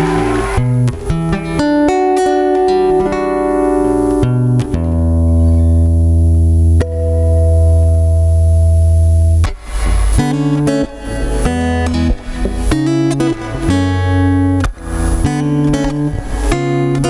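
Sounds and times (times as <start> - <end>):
plucked guitar notes: 0.0 - 17.0.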